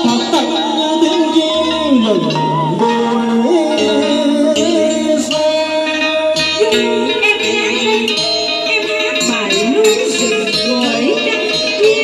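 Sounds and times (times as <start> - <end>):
melody with sliding sustained notes: 0.0 - 12.0
steady musical accompaniment: 0.0 - 12.0.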